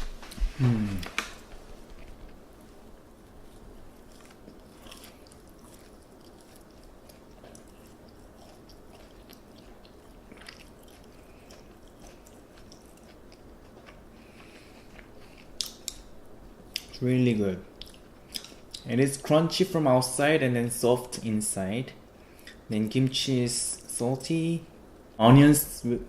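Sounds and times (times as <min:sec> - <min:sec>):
person chewing crispy food: 0:00.3 - 0:17.0, 0:17.7 - 0:18.9.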